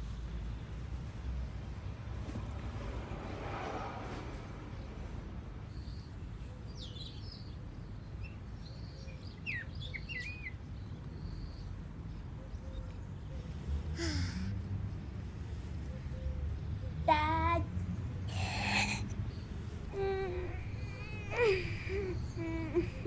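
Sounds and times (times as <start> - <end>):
birds chirping: 6.8 - 12.2, 18.4 - 23.0.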